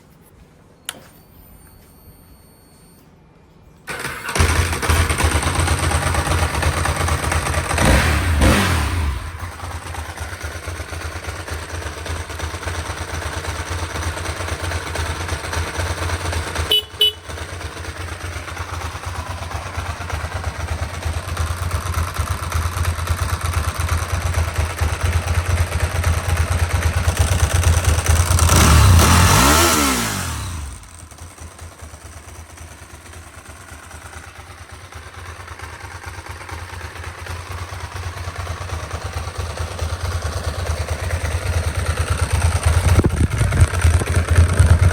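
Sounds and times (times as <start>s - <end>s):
brief click: 0.8s - 3.2s
motorcycle engine idling: 3.9s - 44.9s.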